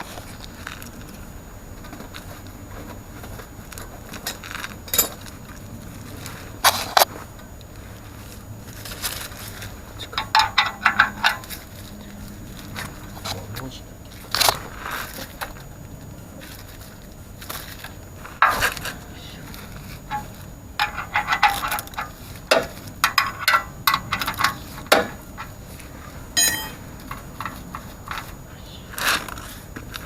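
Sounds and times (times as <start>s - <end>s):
metal tools clinking: 4.9s - 5.3s, 10.1s - 11.7s, 20.1s - 25.6s, 26.4s - 28.3s
metallic ring: 10.2s - 11.6s, 26.4s - 26.9s.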